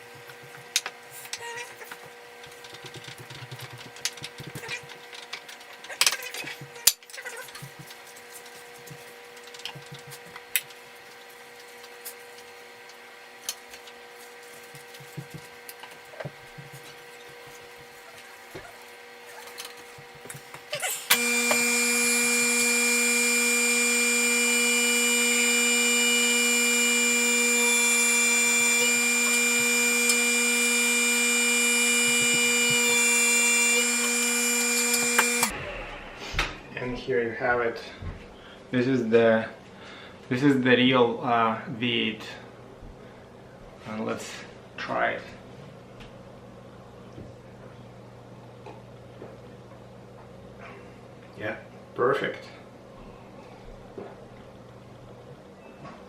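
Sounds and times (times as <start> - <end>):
electric juicer running: 8.3 - 36.7
loud steady motor hum: 17.7 - 37.0.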